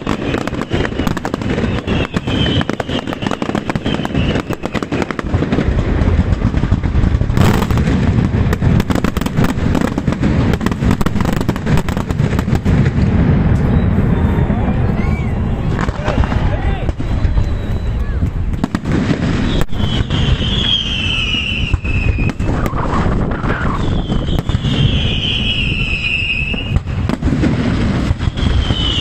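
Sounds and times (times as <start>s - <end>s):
fireworks crackling and banging: 0.0s - 29.0s
deep rumble: 12.2s - 18.7s.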